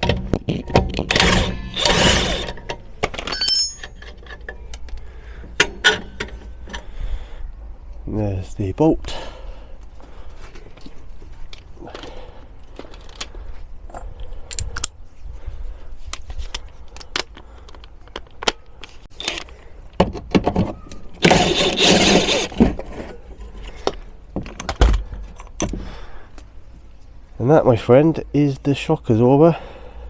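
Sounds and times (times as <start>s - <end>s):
metal rattling scrape: 1.1s - 2.6s, 3.3s - 4.0s, 21.2s - 22.6s
metal clinks and jangling: 3.3s - 4.0s.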